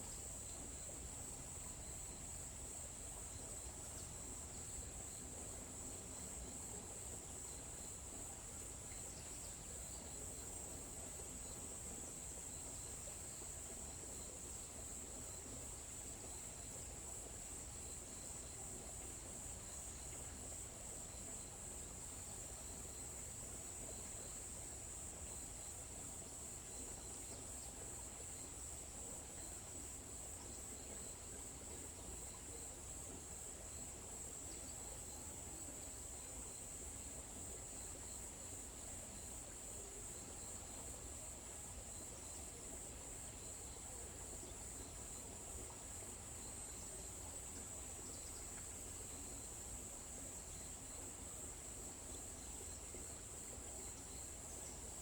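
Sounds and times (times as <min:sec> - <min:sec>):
insects chirping: 0:00.0 - 0:55.0.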